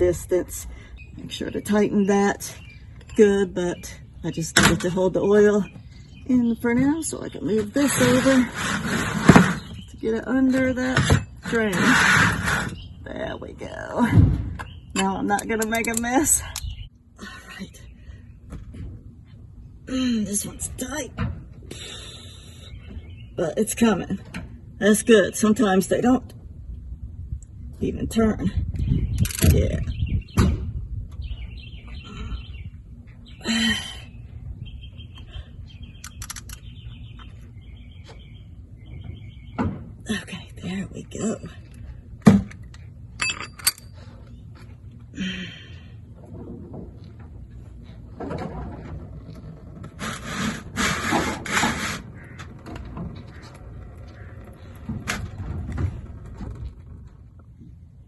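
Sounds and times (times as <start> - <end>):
tools scraping on oil filter: 7.6 - 9.9, 10.8 - 12.9
small bird chirping trills: 31.2 - 39.6.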